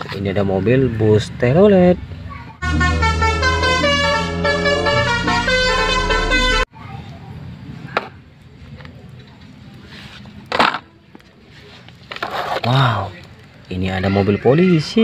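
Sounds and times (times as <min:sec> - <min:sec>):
multi-tone bus horn melody: 0:02.6 - 0:06.7
steady low drone: 0:02.6 - 0:06.7.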